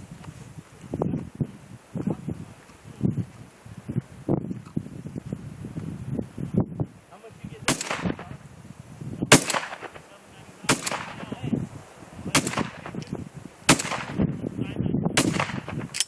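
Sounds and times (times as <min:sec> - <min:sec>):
shotgun shots: 0:07.6 - 0:08.4, 0:09.3 - 0:11.5, 0:12.3 - 0:13.0, 0:13.7 - 0:14.3, 0:15.2 - 0:16.0.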